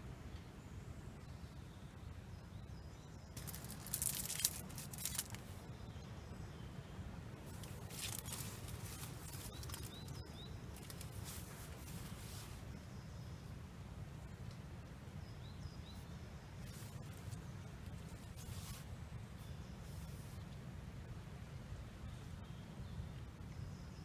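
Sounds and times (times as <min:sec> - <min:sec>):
rustling: 0:03.4 - 0:05.6, 0:07.5 - 0:12.7, 0:16.6 - 0:18.9.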